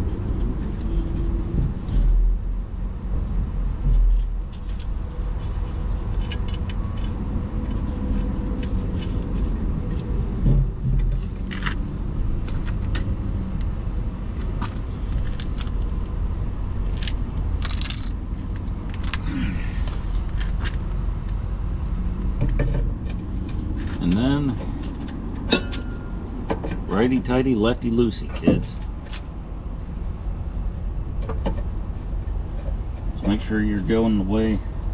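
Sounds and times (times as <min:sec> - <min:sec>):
steady low rumble: 0:00.0 - 0:34.9
metal hardware clinking: 0:16.9 - 0:19.3, 0:25.5 - 0:26.2.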